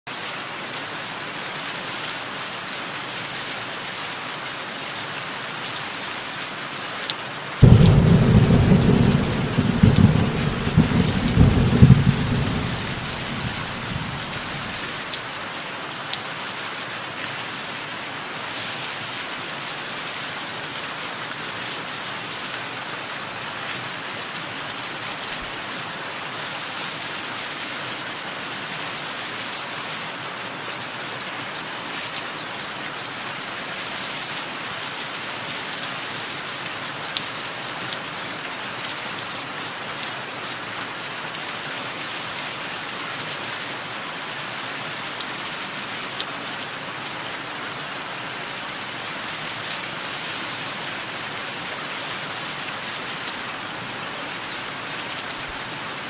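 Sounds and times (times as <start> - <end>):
steady rain falling: 0.1 - 56.0
thunder clap and rumble: 7.6 - 15.0.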